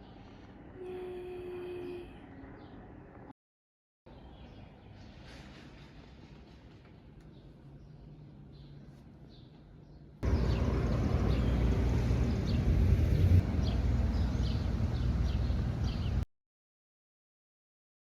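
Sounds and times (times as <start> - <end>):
steady low rumble: 10.2 - 16.2.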